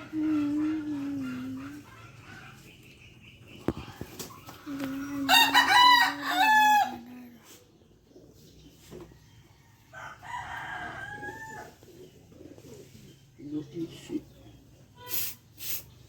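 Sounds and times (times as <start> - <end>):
rooster crowing: 5.3 - 7.1, 9.8 - 11.8.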